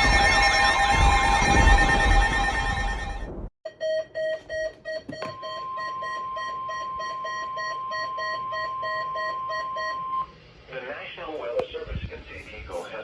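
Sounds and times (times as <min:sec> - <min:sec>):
emergency alert siren: 0:00.0 - 0:03.4
rapid electronic alarm beeps: 0:00.0 - 0:10.3.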